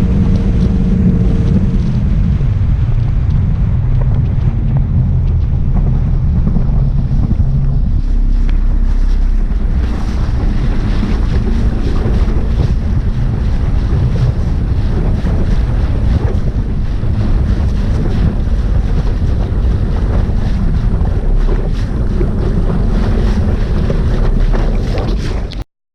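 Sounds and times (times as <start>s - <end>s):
outboard motor droning: 0.0s - 25.6s
water rushing past hull: 0.0s - 25.6s
wind buffeting microphone: 0.0s - 25.6s.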